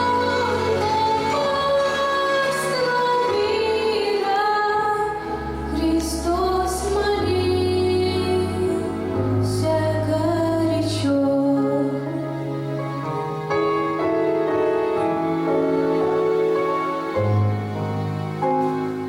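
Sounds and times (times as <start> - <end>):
woman singing: 0.0 - 12.2
instrumental accompaniment with bass: 0.0 - 19.0.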